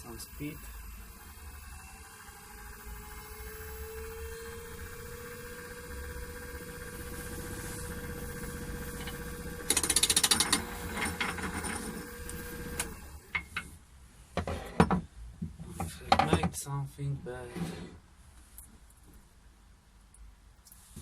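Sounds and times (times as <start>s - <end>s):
wood lathe motor running: 0.0s - 13.3s
turning tool chattering on wood: 9.0s - 11.6s.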